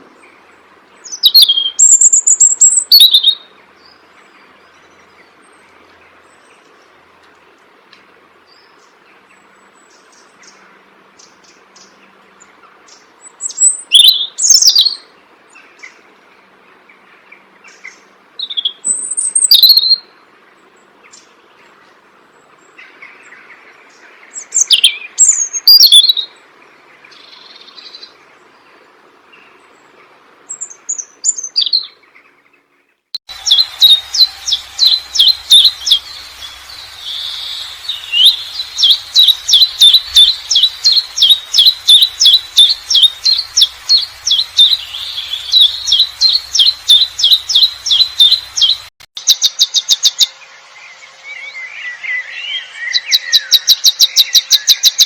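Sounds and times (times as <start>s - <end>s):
songbirds chirping: 0.0s - 55.0s
bird repeating short high chirp: 1.1s - 3.4s, 33.4s - 50.4s.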